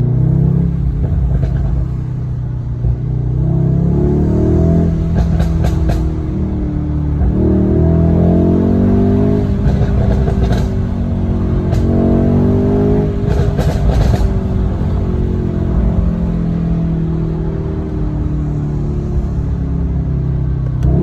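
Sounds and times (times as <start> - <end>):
car engine revving: 0.0 - 21.0
exhaust pops and crackles: 0.8 - 3.1, 4.7 - 8.0, 8.7 - 18.2.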